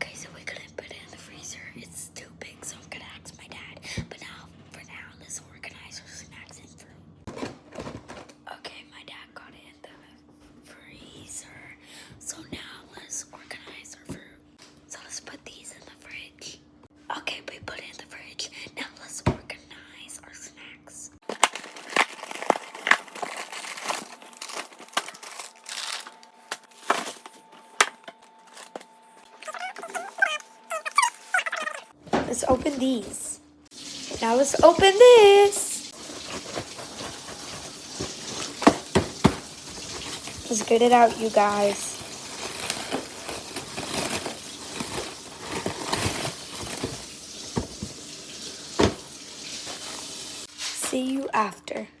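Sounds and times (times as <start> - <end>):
plastic packaging rustling: 7.3 - 8.4, 21.2 - 31.7, 32.3 - 51.2.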